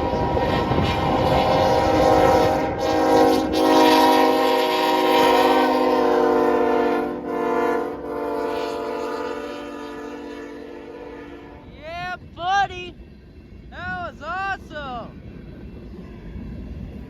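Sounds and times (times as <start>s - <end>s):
locomotive air horn blasts: 0.0s - 11.7s.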